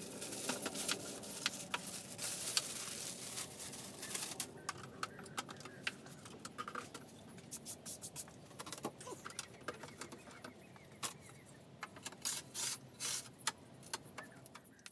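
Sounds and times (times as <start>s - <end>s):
packaging rustling: 0.0s - 4.9s
parts clicking and rattling: 4.0s - 14.9s.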